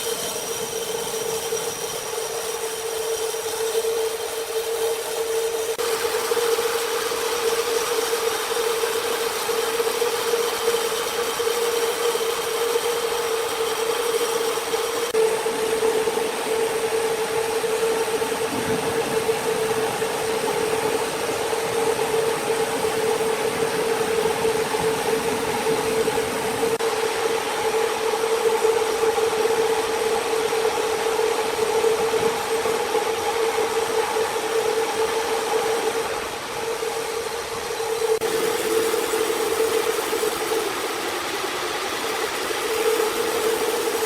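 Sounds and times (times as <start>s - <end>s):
sawmill machinery running: 0.0s - 44.0s.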